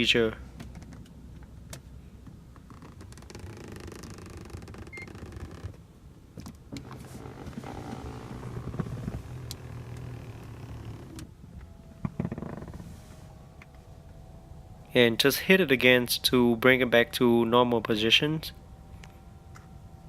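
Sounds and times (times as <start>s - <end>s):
seat clicks: 6.4s - 11.3s
power seat motors whirring: 6.7s - 14.8s.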